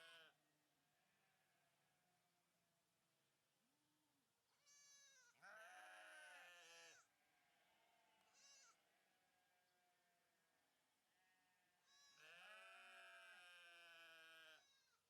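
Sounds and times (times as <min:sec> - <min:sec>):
sheep bleating: 0:00.0 - 0:00.4, 0:04.6 - 0:10.1, 0:11.1 - 0:15.0.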